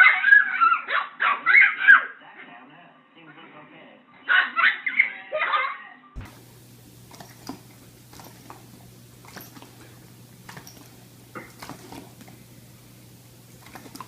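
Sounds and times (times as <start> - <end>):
steady low hum: 6.2 - 14.0
dog mouth smacks and clicks: 7.0 - 12.4, 13.5 - 14.0.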